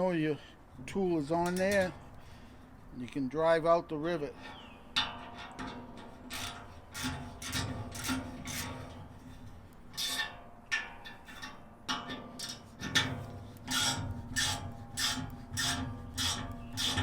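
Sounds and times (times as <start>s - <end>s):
tool screw rasping strokes: 13.6s - 17.0s.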